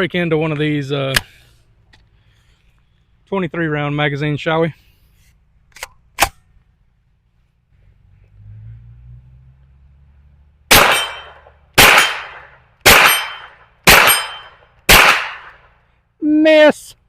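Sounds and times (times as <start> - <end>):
gunshots: 10.7 - 15.6
ringing of steel target: 10.7 - 15.6.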